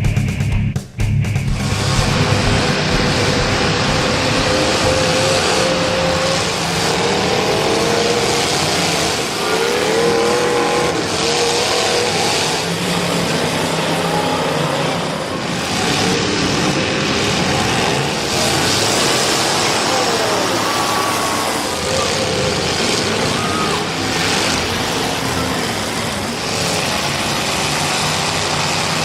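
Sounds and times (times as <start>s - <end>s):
race car engines revving: 1.3s - 29.0s.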